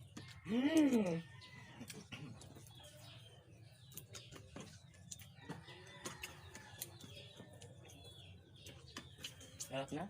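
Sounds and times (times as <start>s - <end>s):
eating clicks and taps: 3.8s - 9.8s.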